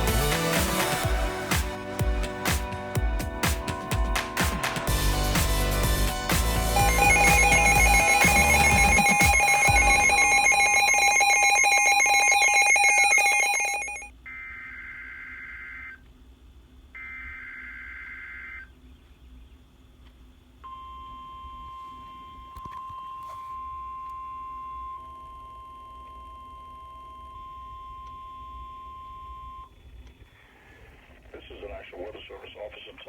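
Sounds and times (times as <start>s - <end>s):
steady electronic tones: 0.0s - 14.1s
warbling data bursts: 4.9s - 14.1s
steady warning alarm tone: 5.0s - 15.9s.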